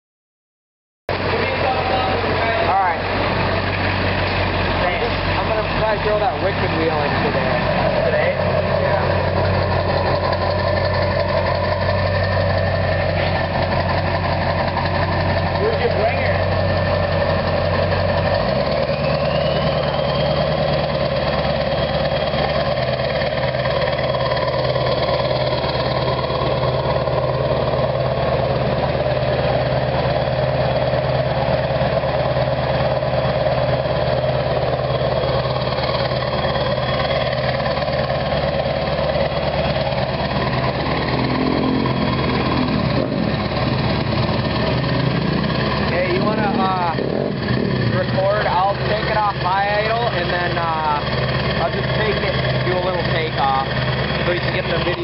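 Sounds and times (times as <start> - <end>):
diesel engine idling: 1.1 - 55.0
turbo whistle: 18.6 - 20.6.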